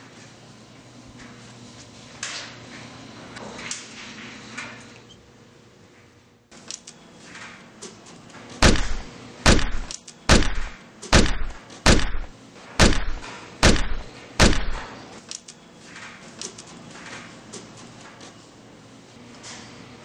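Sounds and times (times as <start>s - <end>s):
gunshots: 8.6s - 14.9s.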